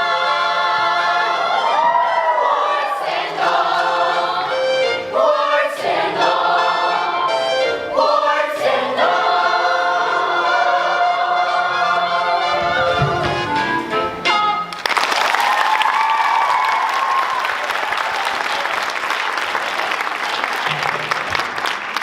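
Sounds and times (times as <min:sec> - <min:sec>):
children's chorus singing: 0:00.0 - 0:14.0.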